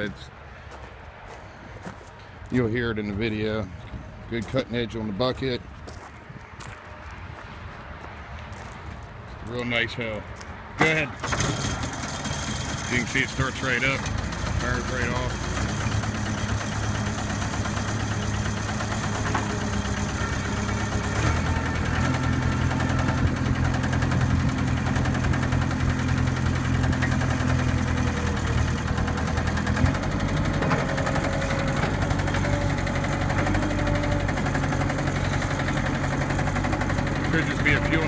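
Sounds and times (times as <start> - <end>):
diesel engine running: 10.8 - 38.0.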